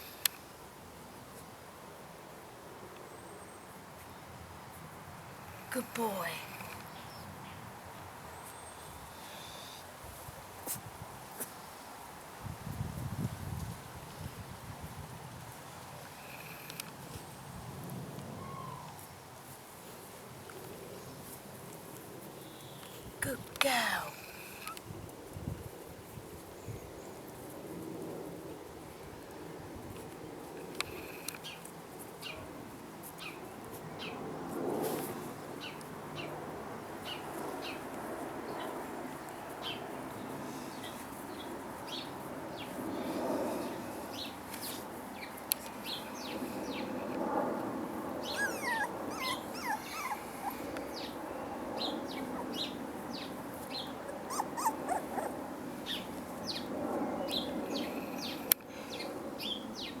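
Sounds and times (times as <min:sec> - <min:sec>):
puppies whimpering and squeaking: 0:48.2 - 0:50.7, 0:54.1 - 0:55.4
puppy whines: 0:48.2 - 0:51.2, 0:54.0 - 0:55.4.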